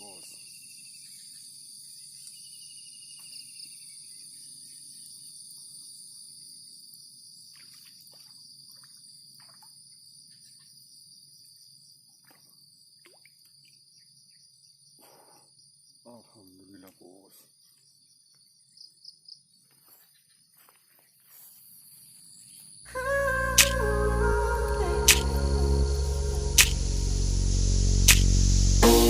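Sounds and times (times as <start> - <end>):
insects chirring: 0.0 - 29.0
pulsed insect trill: 22.7 - 29.0.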